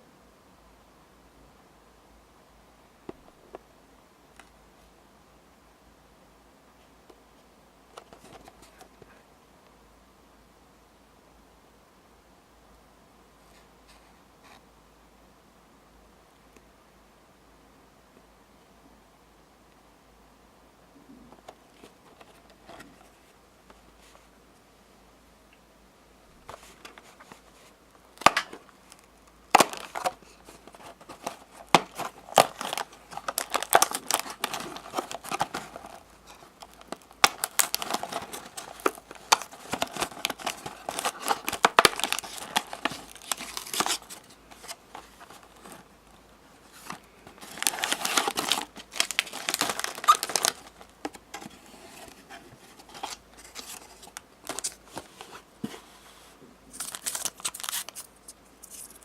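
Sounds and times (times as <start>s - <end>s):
snack packaging crackling and tearing: 28.2s - 45.9s, 46.6s - 51.2s, 52.8s - 55.1s, 56.7s - 59.0s.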